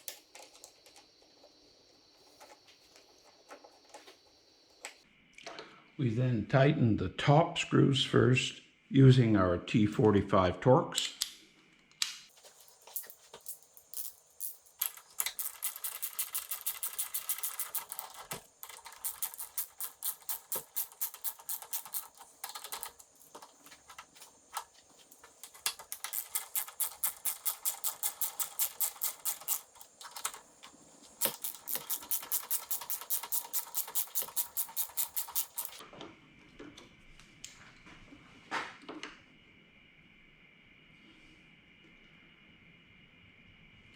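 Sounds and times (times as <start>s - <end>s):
ratchet wrench clicking: 12.9s - 23.4s, 25.4s - 30.4s, 31.2s - 35.8s.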